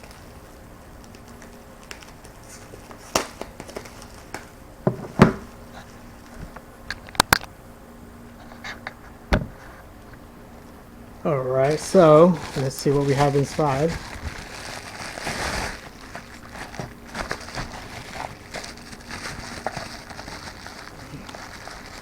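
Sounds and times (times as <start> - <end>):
plastic and cardboard crinkling: 1.0 - 6.6, 11.3 - 22.0
tape being peeled off: 11.7 - 22.0.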